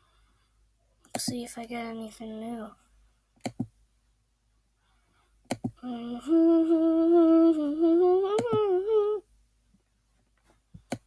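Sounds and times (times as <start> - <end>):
sharp clicks: 3.4 - 3.7, 5.5 - 5.8
person humming a long note: 5.8 - 9.2.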